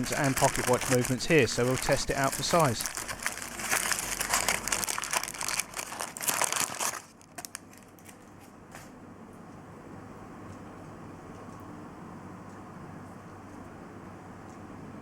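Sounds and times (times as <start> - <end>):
plastic packaging crinkling: 0.0 - 8.4.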